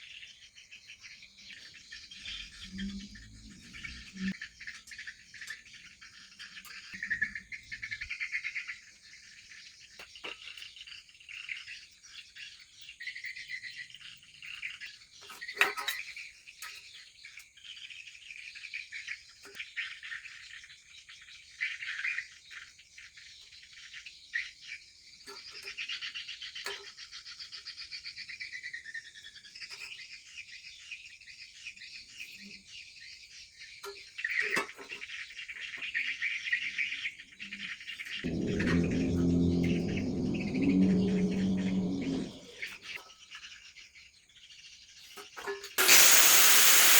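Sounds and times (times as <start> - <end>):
birds chirping and singing: 38.3 - 42.6.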